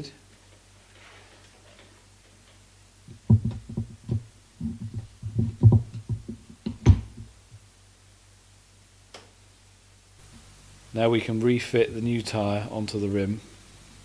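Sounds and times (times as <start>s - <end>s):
dull knocks and thumps: 3.1s - 7.4s.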